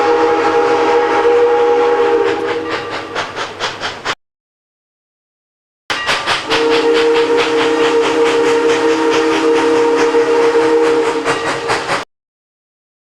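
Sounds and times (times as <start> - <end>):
steam whistle chord: 0.0 - 3.2, 5.9 - 12.0
steam locomotive exhaust chuffs: 0.0 - 4.2, 5.9 - 12.1.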